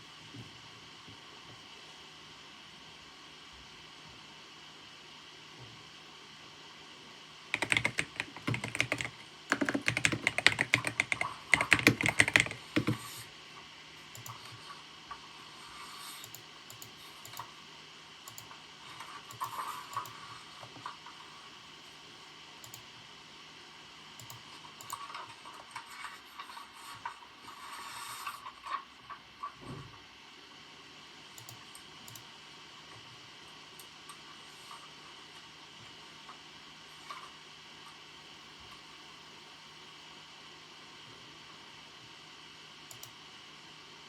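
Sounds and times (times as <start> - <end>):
computer keyboard typing: 7.6 - 13.2.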